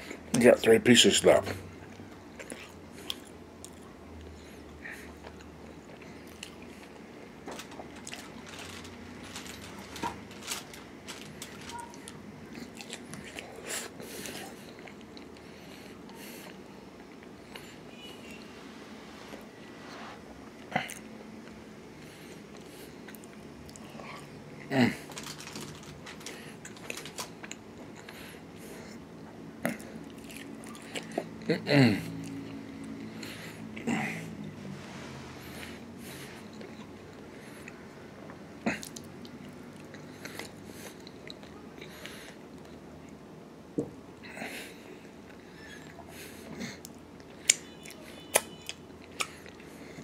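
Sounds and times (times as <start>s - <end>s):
person chewing chicken wings: 2.3s - 17.7s, 29.6s - 31.4s, 45.3s - 50.0s.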